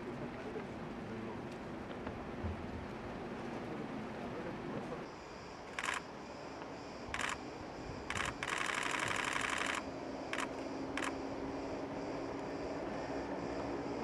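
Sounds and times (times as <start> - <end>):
camera shutters clicking: 5.8 - 6.0, 7.2 - 7.4, 8.1 - 9.8, 10.4 - 11.2.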